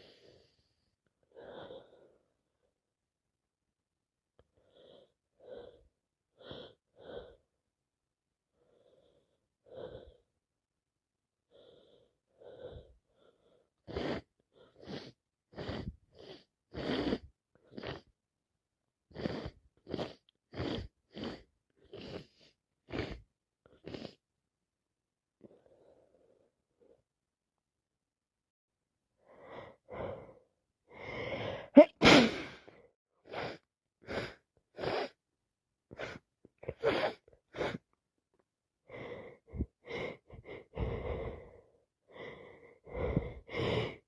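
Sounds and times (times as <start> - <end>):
wheezy hitching breaths: 0.0 - 2.4, 4.5 - 7.5, 11.5 - 18.1, 19.1 - 24.2, 29.2 - 35.2, 35.9 - 38.0, 38.8 - 44.0
person sneezing: 31.7 - 32.7, 36.7 - 37.8.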